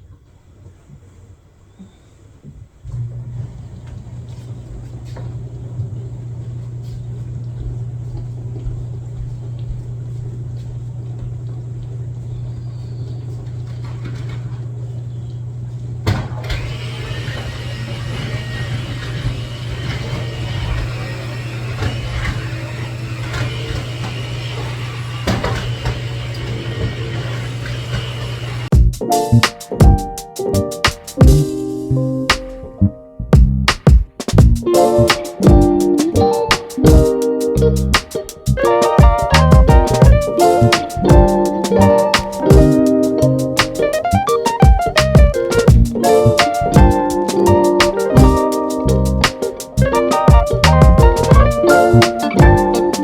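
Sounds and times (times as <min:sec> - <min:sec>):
motor humming: 0:02.9 - 0:28.8, 0:34.3 - 0:53.0.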